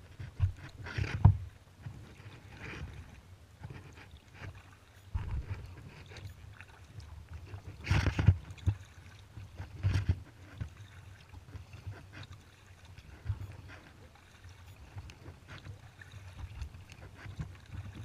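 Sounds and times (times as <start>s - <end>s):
wind rumble on microphone: 5.1s - 6.1s, 14.9s - 18.0s.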